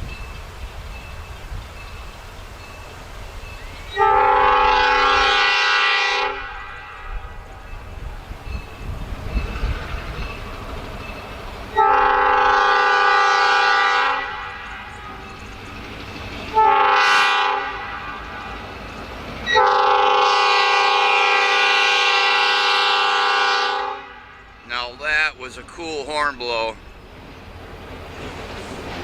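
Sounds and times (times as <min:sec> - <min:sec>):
train rumble: 0:00.0 - 0:29.0
locomotive air horn blasts: 0:03.9 - 0:07.3, 0:11.7 - 0:15.1, 0:16.5 - 0:18.2, 0:19.5 - 0:24.6.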